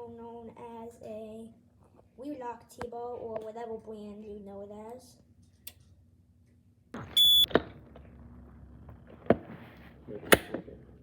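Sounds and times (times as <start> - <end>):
fire alarm panel beep: 7.1 - 7.5.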